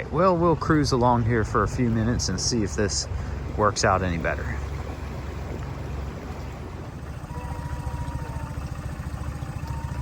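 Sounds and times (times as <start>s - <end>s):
boat motor running: 0.0s - 10.0s
faint thin tone: 7.0s - 10.0s.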